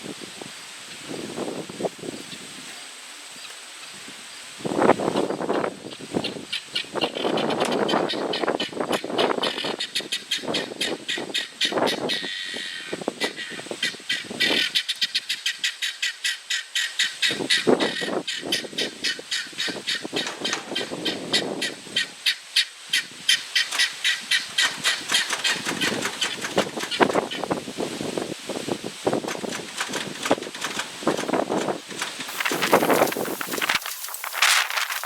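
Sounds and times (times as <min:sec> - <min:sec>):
engine chuffing clatter: 0:23.8 - 0:27.4, 0:29.2 - 0:33.2.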